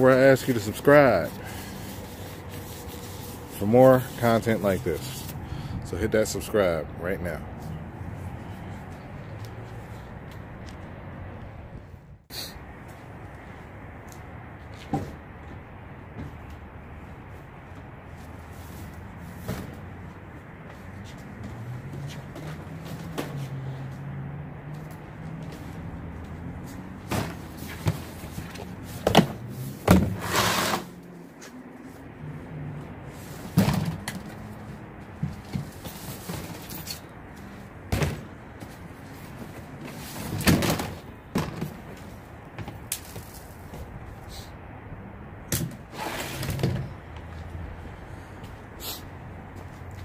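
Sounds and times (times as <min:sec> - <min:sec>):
objects knocking and thumping: 0:40.2 - 0:42.0.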